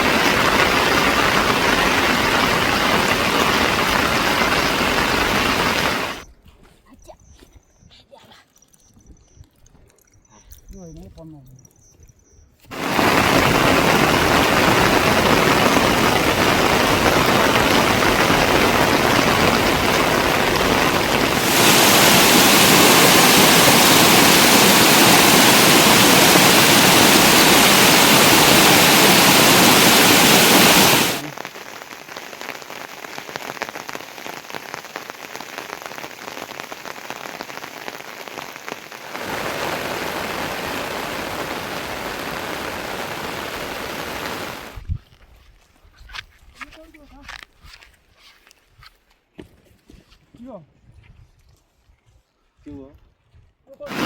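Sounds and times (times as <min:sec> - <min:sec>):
heavy rain falling: 0:00.0 - 0:06.2, 0:12.7 - 0:44.8.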